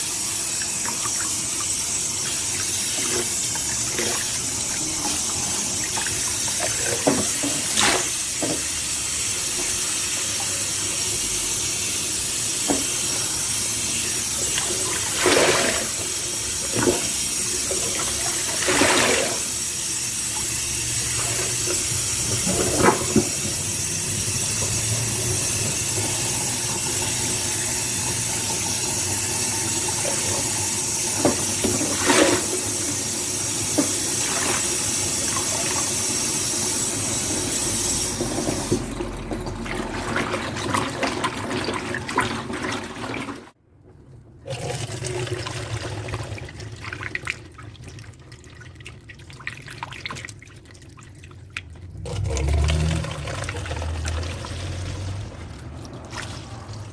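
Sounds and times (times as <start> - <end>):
tap water running: 0.0 - 43.6, 44.4 - 56.9
sponge squelching: 13.9 - 19.6, 20.3 - 26.2, 33.9 - 36.0.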